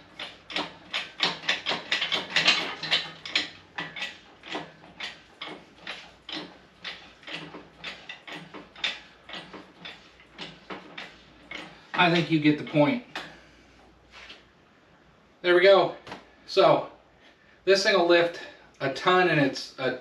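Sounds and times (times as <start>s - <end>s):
hydraulic jack pump clicks: 0.0s - 12.3s.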